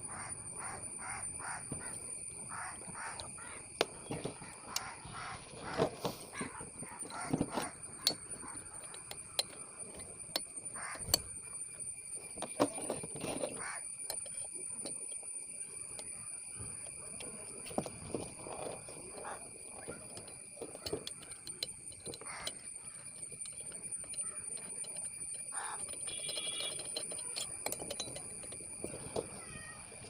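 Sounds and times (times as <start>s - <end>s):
crows cawing: 0.1s - 3.8s, 4.4s - 7.6s, 10.7s - 11.1s, 13.6s - 13.8s, 22.1s - 23.1s, 25.4s - 26.6s
hand tools clicking on metal: 6.0s - 11.6s, 12.2s - 30.0s.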